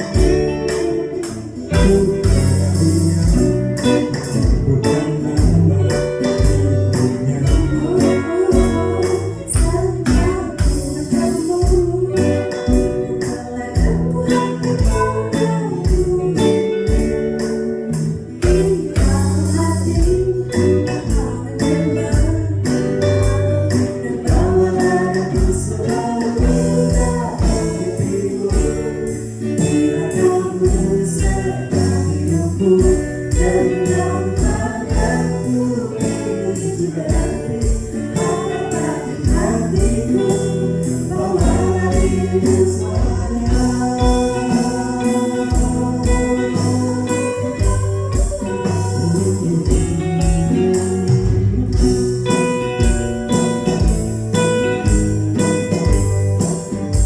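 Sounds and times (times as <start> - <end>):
electric drums beat: 0.0 - 57.0
pop band with singing: 0.0 - 57.0.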